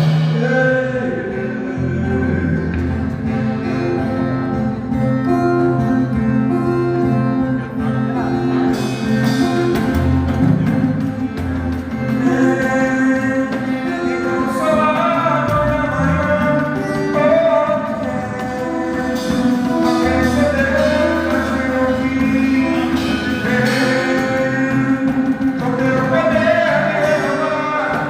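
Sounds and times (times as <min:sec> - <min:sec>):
worship music with singing: 0:00.0 - 0:03.5, 0:12.0 - 0:28.0.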